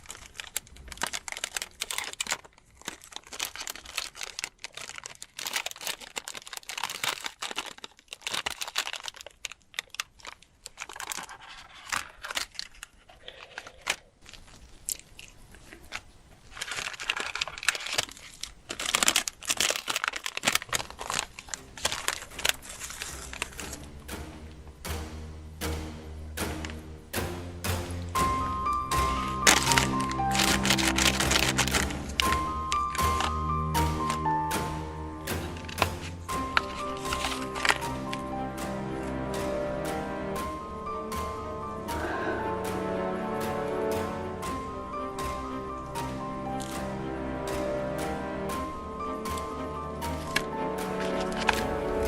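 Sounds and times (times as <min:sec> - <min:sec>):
packaging tearing and crinkling: 0:00.0 - 0:24.2, 0:28.2 - 0:41.9, 0:48.4 - 0:52.0.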